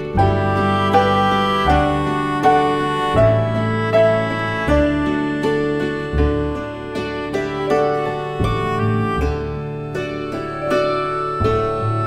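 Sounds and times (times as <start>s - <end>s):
steady bass: 0.0s - 10.7s
plucked instrumental tune: 0.0s - 12.0s.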